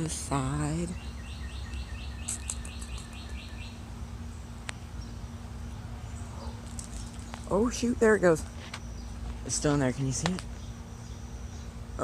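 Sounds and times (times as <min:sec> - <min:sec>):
small bird calling: 0:00.0 - 0:07.9.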